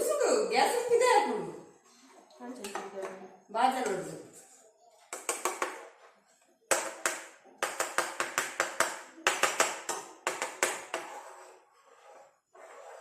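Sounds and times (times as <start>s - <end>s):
kitchen utensil tapping: 2.6s - 3.2s, 5.1s - 5.8s, 6.7s - 11.1s.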